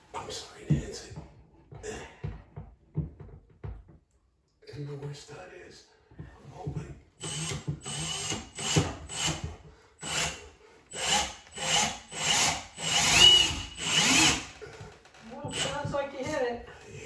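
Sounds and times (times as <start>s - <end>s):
cordless drill driving screw into wood: 7.2s - 14.6s, 15.5s - 15.9s.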